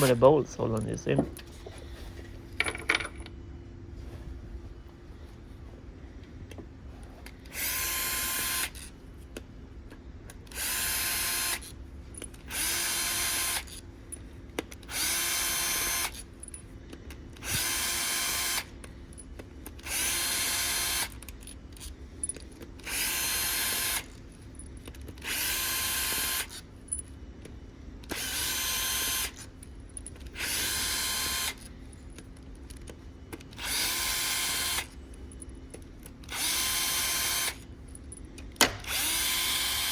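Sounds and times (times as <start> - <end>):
electric drill whining: 7.5 - 8.9, 10.5 - 11.7, 12.5 - 13.8, 14.9 - 16.2, 17.4 - 18.7, 19.8 - 21.2, 22.8 - 24.1, 25.2 - 26.6, 28.1 - 29.4, 30.4 - 31.6, 33.5 - 35.0, 36.3 - 37.6, 38.8 - 39.9.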